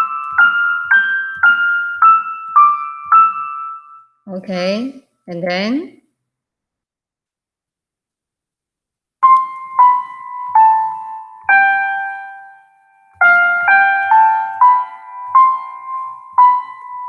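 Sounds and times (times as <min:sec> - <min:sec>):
simple piano melody: 0:00.0 - 0:04.2, 0:09.2 - 0:17.0.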